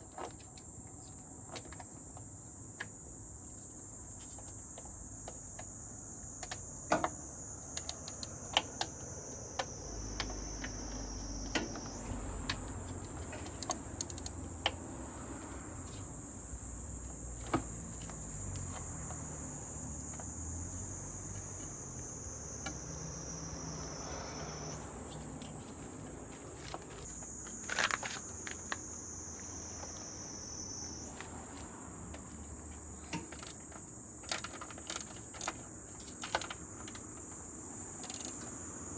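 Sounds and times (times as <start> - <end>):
insects trilling: 0.0 - 38.9
sharp clicks and light knocks: 7.8 - 9.0, 9.6 - 14.8, 33.0 - 37.4.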